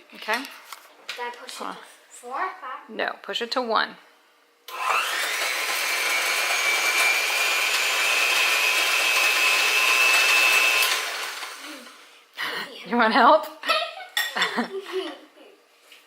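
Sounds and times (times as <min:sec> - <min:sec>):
electric hand mixer whining: 0:04.7 - 0:12.0.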